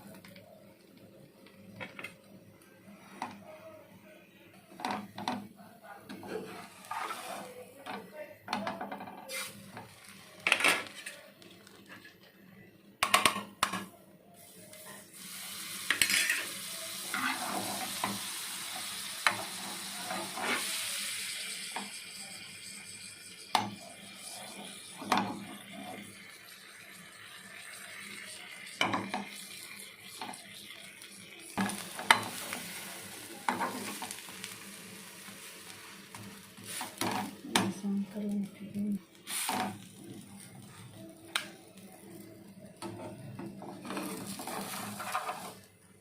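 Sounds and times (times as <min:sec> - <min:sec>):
spatula scraping a pan: 0:06.1 - 0:08.0, 0:15.9 - 0:18.2, 0:19.2 - 0:20.8, 0:33.4 - 0:34.2, 0:42.8 - 0:45.6
bread sizzling in butter: 0:06.3 - 0:07.5, 0:09.3 - 0:11.9, 0:14.4 - 0:37.4, 0:39.2 - 0:41.0, 0:43.6 - 0:45.7.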